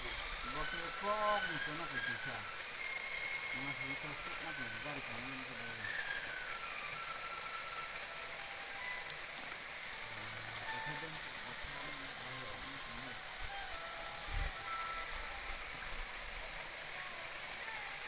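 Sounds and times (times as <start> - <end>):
waterfall rushing water: 0.0 - 18.0
faint voices talking: 10.1 - 18.0.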